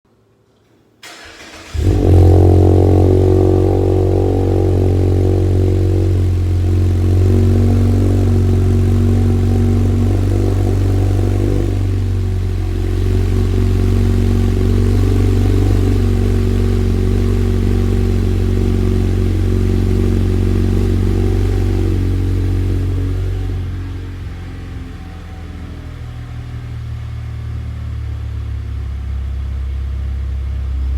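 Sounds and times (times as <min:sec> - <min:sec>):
car engine cranking: 0:01.0 - 0:24.6
car engine revving and idling: 0:01.0 - 0:30.9.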